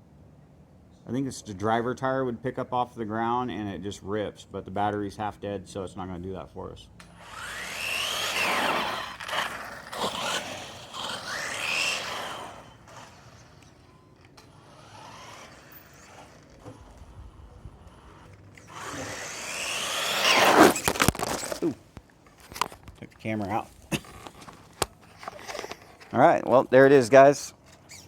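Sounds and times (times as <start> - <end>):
rc car motor whining: 7.0 - 21.7, 23.5 - 26.1, 27.6 - 28.0.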